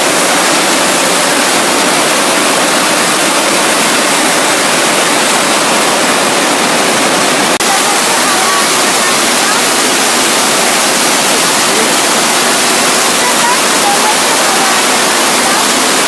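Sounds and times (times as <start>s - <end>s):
machinery rushing roar: 0.0s - 16.0s.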